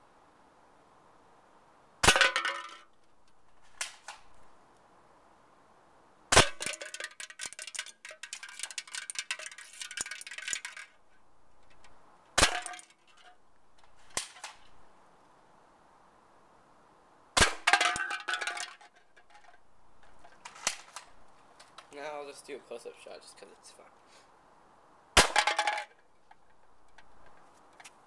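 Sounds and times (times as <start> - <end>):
metallic clinks and rattles: 6.6 - 14.7, 17.7 - 21.1.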